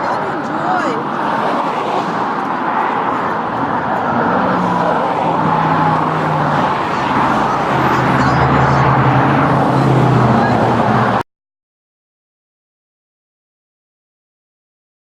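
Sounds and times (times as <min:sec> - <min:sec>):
engine hum: 0:00.0 - 0:11.2
vehicles passing: 0:00.0 - 0:11.2.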